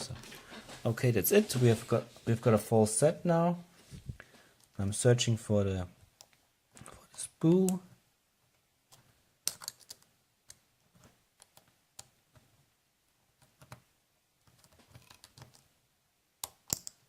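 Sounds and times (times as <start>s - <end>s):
lock pick clicking and scraping: 9.4s - 10.0s.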